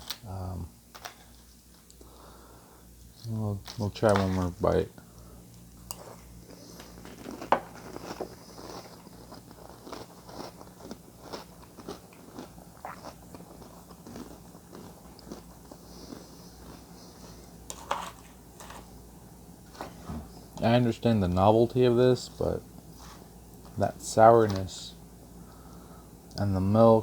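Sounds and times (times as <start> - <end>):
person chewing crunchy cereal: 5.9 - 18.9.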